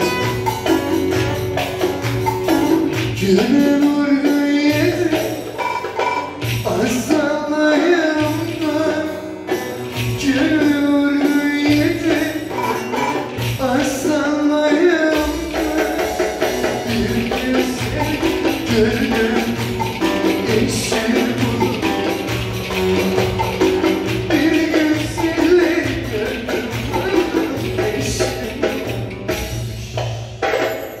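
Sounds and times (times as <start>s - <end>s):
folk dance melody over beat: 0.0s - 31.0s
jingling tambourine: 30.4s - 31.0s.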